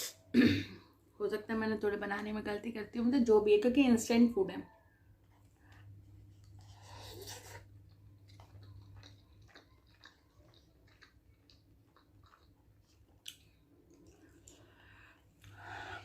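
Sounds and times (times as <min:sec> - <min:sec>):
person chewing food: 0:05.2 - 0:16.0.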